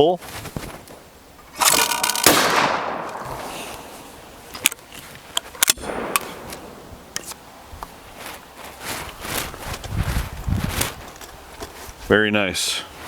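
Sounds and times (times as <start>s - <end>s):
gun being handled: 0.6s - 9.9s
shotgun shot echo: 1.6s - 3.9s, 5.8s - 6.9s.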